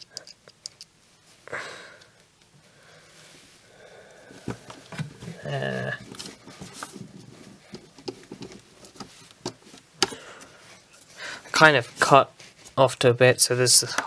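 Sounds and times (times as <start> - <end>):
small clicks and taps of screwing: 0.0 - 1.0, 7.6 - 10.2.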